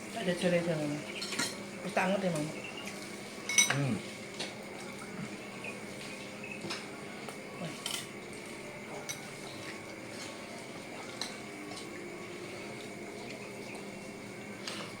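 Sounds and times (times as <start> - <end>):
steady high hum: 0.0 - 15.0
cutlery clinking on a plate: 1.2 - 1.6, 3.4 - 3.8, 7.8 - 8.2.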